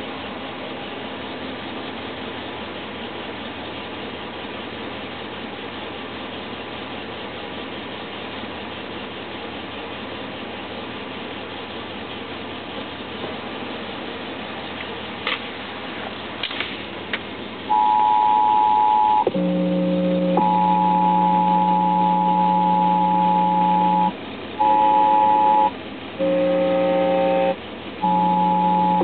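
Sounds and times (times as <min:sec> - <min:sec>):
loud two-tone beep: 0:17.7 - 0:29.0
low buzzing tone: 0:17.7 - 0:29.0
radio hiss: 0:18.4 - 0:29.0.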